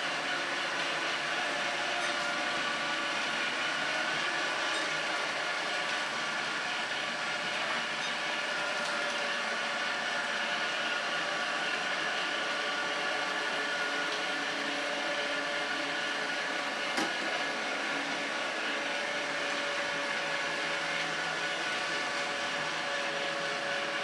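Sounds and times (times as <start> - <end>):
robot vacuum cleaner whirring: 9.2 - 24.0.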